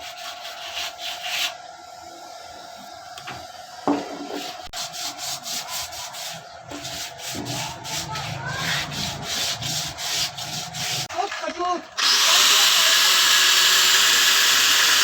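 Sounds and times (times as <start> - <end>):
hand sanding strokes: 0.0 - 1.6, 4.2 - 11.1.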